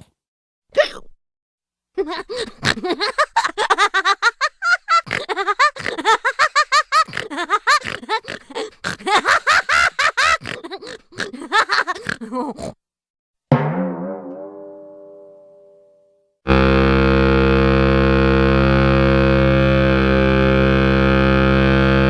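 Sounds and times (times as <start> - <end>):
sped-up voice chattering and laughing: 2.0 - 12.8.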